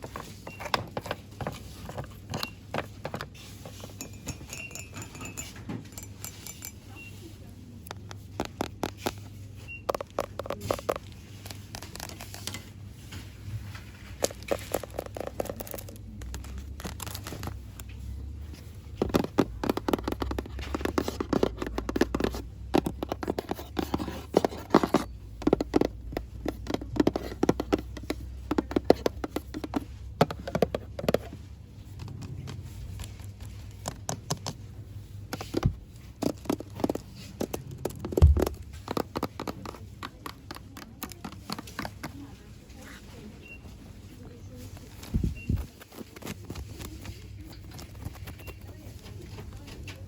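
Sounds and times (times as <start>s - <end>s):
scratching and tapping: 7.8s - 12.7s, 14.0s - 34.6s, 35.3s - 42.4s, 44.7s - 50.0s
plastic packaging crinkling: 13.7s - 22.4s.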